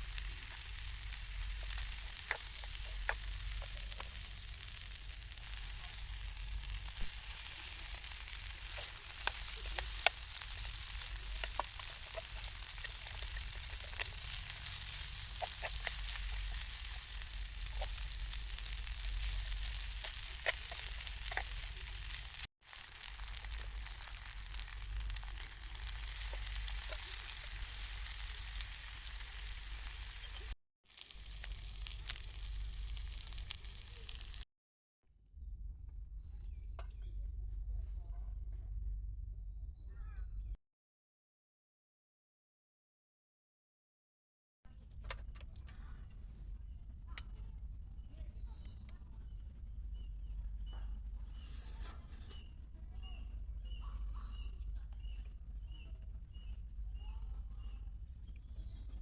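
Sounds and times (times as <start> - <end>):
food sizzling in a hot pan: 0.0 - 34.4
sharp crackles and pops: 0.0 - 34.5.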